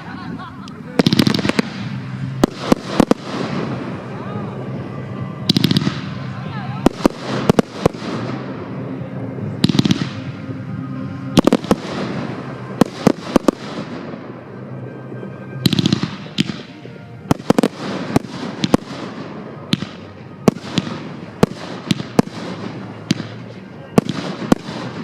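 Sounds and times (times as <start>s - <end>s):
firework bangs: 0.0s - 10.7s, 11.3s - 14.6s, 15.6s - 25.0s
firework crackling bursts: 0.0s - 14.6s, 15.6s - 25.0s.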